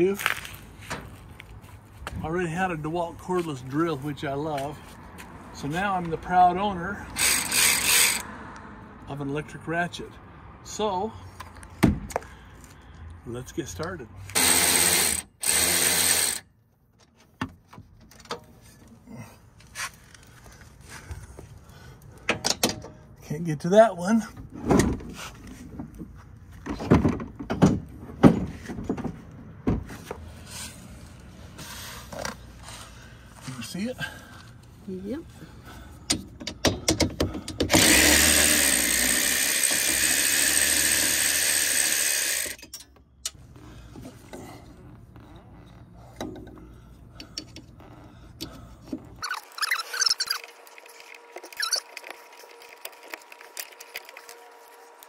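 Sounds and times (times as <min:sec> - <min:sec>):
sharp squeaks and rattles: 0:49.0 - 0:55.0.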